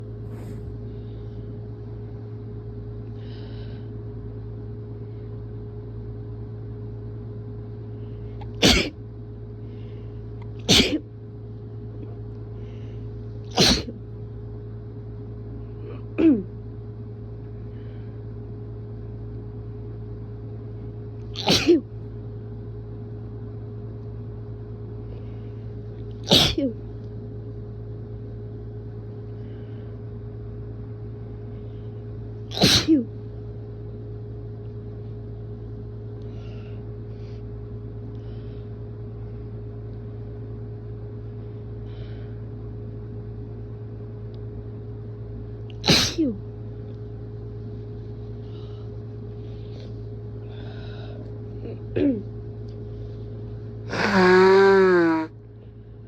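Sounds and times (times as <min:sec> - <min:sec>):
low background hum: 0:00.0 - 0:56.0
person sneezing: 0:00.2 - 0:00.9, 0:08.5 - 0:09.0, 0:10.6 - 0:11.1, 0:13.5 - 0:14.0, 0:21.4 - 0:21.9, 0:26.2 - 0:26.8, 0:32.5 - 0:33.1, 0:45.8 - 0:46.4.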